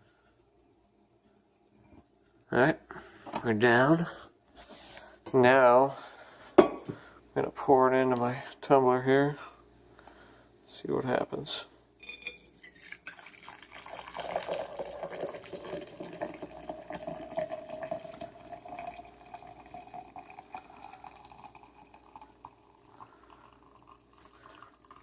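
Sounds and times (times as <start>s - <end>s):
coffee pouring into a tumbler: 12.2s - 25.0s.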